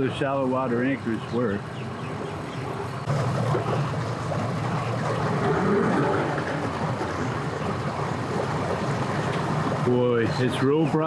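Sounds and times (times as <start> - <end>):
outdoor background noise: 0.0 - 11.0
engine running with low rumble: 1.9 - 9.9.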